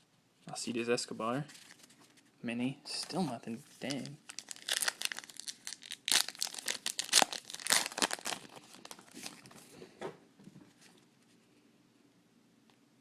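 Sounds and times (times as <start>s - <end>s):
card pack wrapper tearing: 3.8s - 9.5s.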